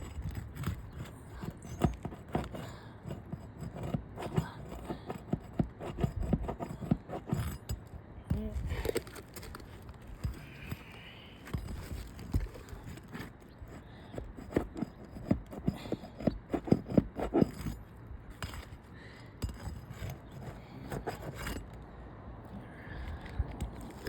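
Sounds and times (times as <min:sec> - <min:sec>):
shingle scraping and crackling: 0:00.0 - 0:21.9, 0:22.8 - 0:24.0.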